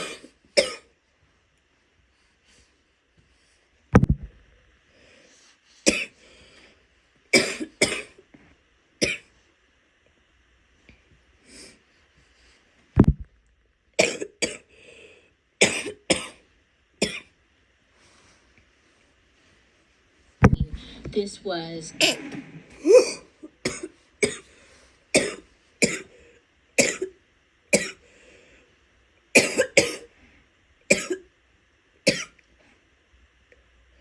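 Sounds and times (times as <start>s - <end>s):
woman coughing wetly: 0.0s - 0.9s, 5.9s - 6.1s, 7.4s - 8.2s, 9.0s - 9.3s, 14.0s - 14.7s, 15.6s - 16.4s, 21.9s - 24.5s, 25.2s - 26.1s, 26.8s - 27.1s, 27.8s - 28.0s, 29.4s - 30.1s, 30.9s - 31.2s, 32.1s - 32.3s
faint breaths: 4.7s - 7.2s, 11.4s - 12.9s, 14.7s - 15.5s, 17.8s - 21.1s, 22.2s - 26.6s, 28.0s - 28.9s.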